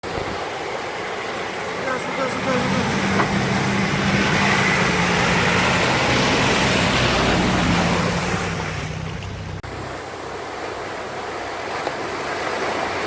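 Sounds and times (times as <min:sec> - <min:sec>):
loud rushing noise: 0:01.4 - 0:09.6
vehicle engine running: 0:01.5 - 0:10.3.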